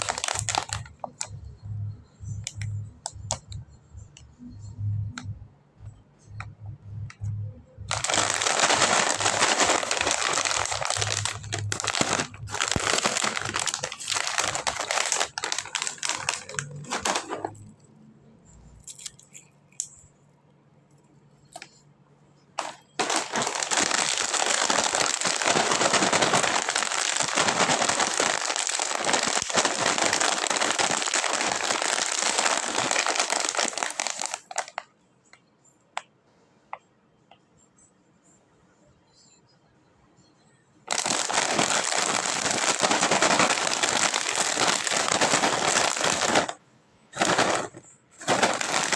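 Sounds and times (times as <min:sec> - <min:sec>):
plastic packaging crinkling: 0:00.0 - 0:01.4, 0:07.8 - 0:17.8, 0:18.8 - 0:20.0, 0:22.6 - 0:34.9, 0:40.9 - 0:48.9
clicks and rustles: 0:07.9 - 0:17.9, 0:22.6 - 0:34.8, 0:47.2 - 0:48.9.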